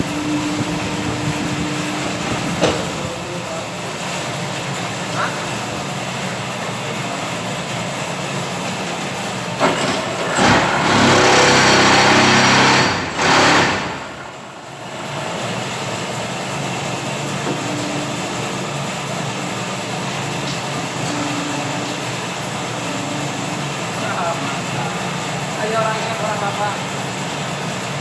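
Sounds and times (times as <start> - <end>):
loud machine noise surge: 0.0 - 3.8, 10.2 - 15.6.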